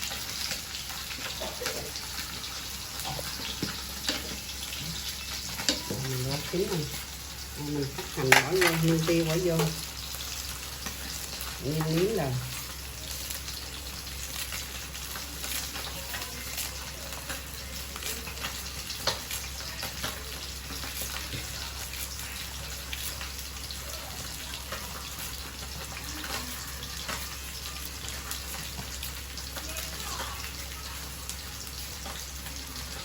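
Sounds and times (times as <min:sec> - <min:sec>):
fish sizzling in hot oil: 0:00.0 - 0:33.0
oil crackling and popping: 0:00.0 - 0:33.0.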